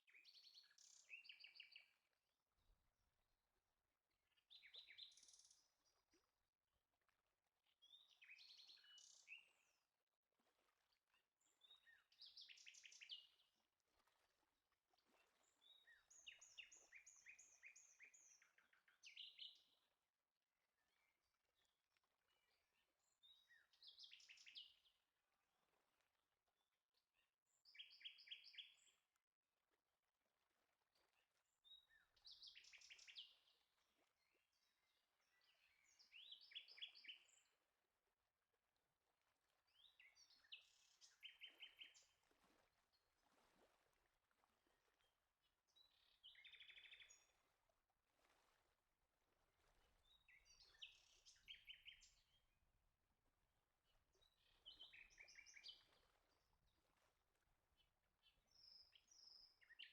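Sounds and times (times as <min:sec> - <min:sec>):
faint birdsong chirps: 0:00.0 - 0:02.1, 0:04.3 - 0:06.2, 0:07.7 - 0:09.9, 0:11.1 - 0:13.6, 0:15.1 - 0:19.9, 0:27.2 - 0:29.1, 0:31.4 - 0:37.6, 0:39.7 - 0:42.2, 0:44.9 - 0:47.4, 0:49.8 - 0:52.6, 0:53.9 - 0:56.8, 0:57.8 - 0:59.9.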